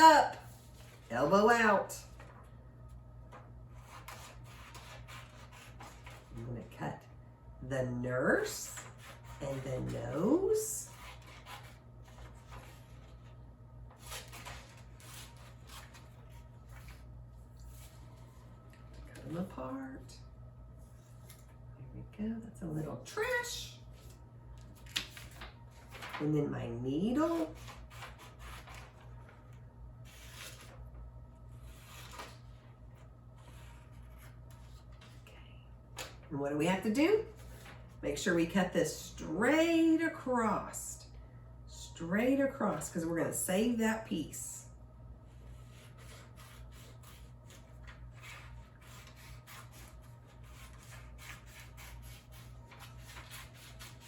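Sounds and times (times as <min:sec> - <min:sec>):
steady low hum: 0:00.0 - 0:54.0
paper rustling: 0:10.8 - 0:19.4, 0:23.9 - 0:26.3, 0:27.2 - 0:35.2.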